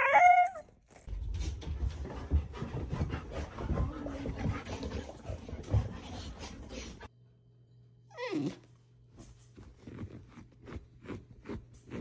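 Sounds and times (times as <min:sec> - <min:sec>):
dog whining: 0:08.1 - 0:08.7.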